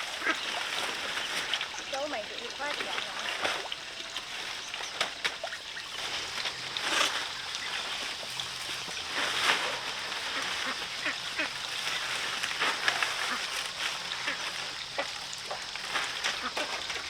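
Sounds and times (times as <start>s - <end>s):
poultry quacking calls: 0.0s - 1.4s, 9.1s - 15.2s, 16.3s - 16.8s.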